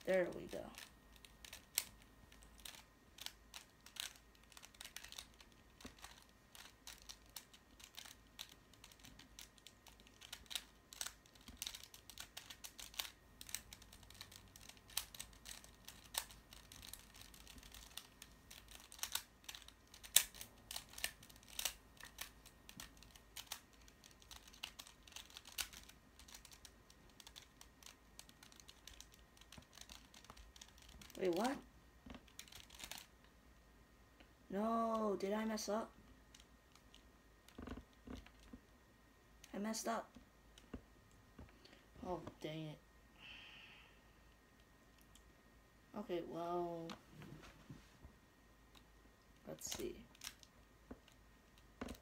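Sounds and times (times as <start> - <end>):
plastic puzzle cube clacking: 0.1 - 33.2, 36.3 - 38.6, 49.6 - 52.0.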